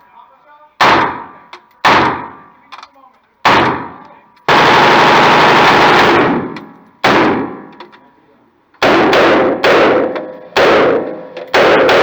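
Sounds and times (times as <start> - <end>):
rifle shots echoing: 0.8 - 2.5, 3.4 - 7.8, 8.8 - 12.0.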